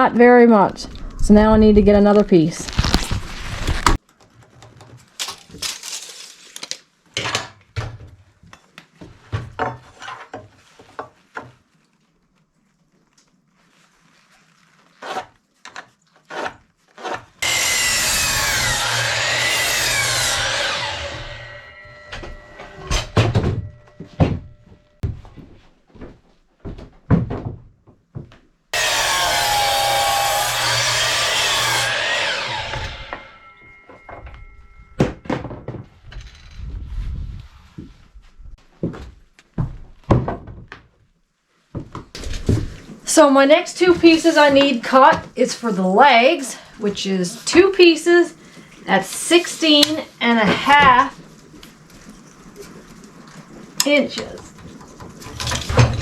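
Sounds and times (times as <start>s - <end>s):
power saw cutting board: 17.4s - 24.4s, 28.8s - 35.0s.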